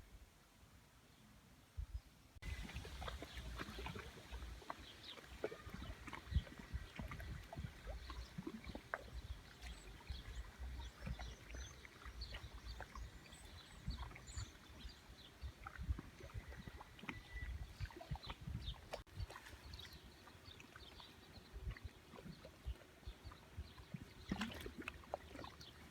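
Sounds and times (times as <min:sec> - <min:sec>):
water lapping: 0:02.4 - 0:25.9
bird chirps: 0:16.4 - 0:18.4.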